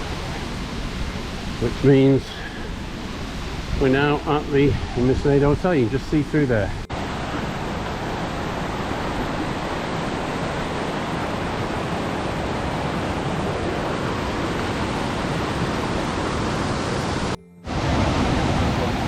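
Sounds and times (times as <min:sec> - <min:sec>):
waterfall rushing: 0:05.8 - 0:19.0.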